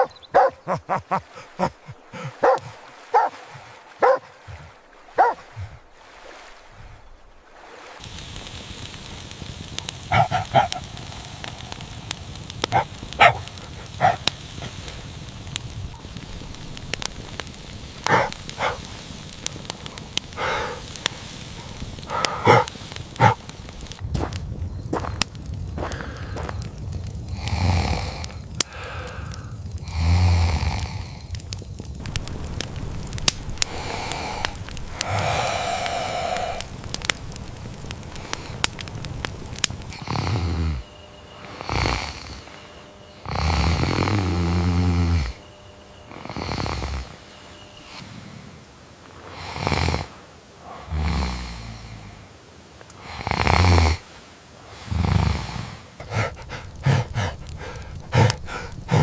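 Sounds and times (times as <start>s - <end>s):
person snoring: 27.3s - 29.1s, 29.8s - 31.2s, 33.8s - 36.7s, 40.0s - 40.8s, 41.6s - 42.4s, 43.2s - 45.4s, 50.7s - 52.2s, 53.0s - 54.0s, 54.8s - 57.5s.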